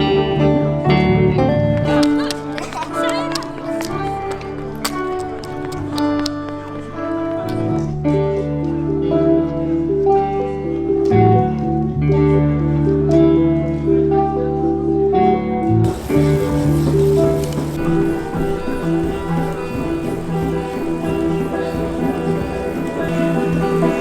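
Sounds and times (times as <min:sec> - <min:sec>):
sustained bass notes: 0:15.6 - 0:24.0
melody of short held notes: 0:15.8 - 0:24.0.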